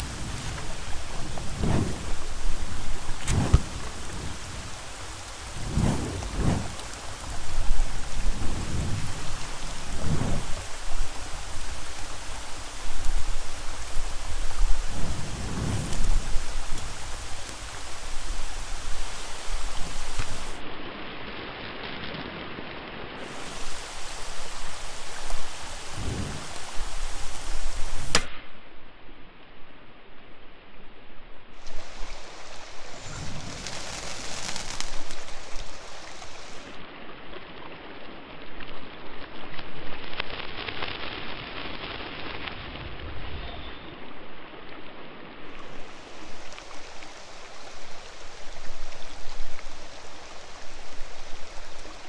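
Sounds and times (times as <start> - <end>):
steady rain hiss: 0.0 - 52.0
sword whooshing through air: 5.6 - 6.9.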